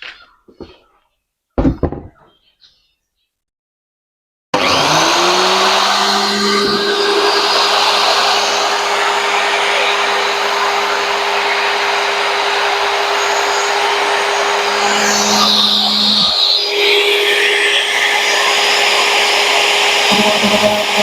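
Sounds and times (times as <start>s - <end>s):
angle grinder whining: 4.6s - 21.0s.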